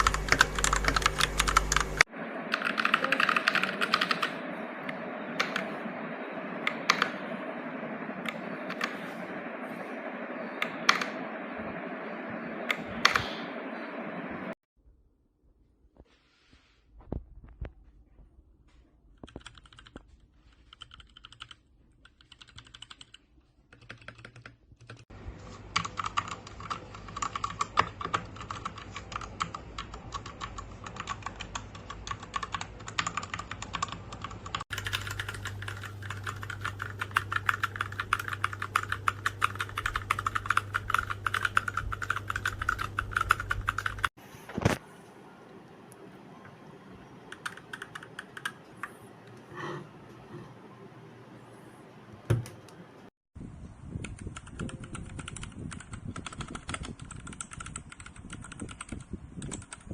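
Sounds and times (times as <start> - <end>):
mechanical keyboard typing: 0.0 - 4.4, 5.4 - 5.7, 19.2 - 20.0, 20.6 - 25.1, 25.7 - 44.1, 47.3 - 49.0, 54.0 - 59.9.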